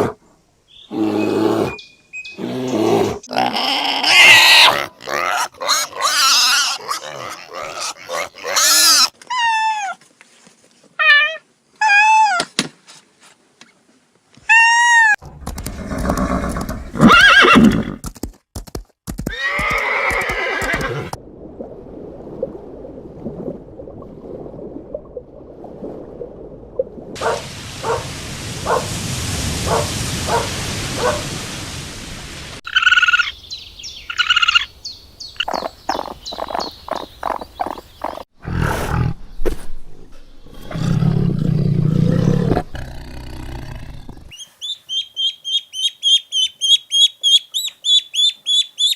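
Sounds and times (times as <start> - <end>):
horses neighing: 15.6 - 18.0, 19.3 - 21.2.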